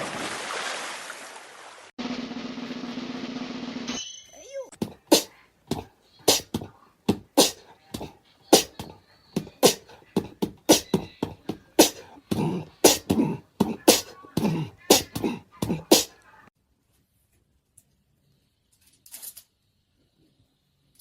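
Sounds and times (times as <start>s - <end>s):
beatbox percussion clicky hits: 6.3s - 6.6s, 8.6s - 11.1s.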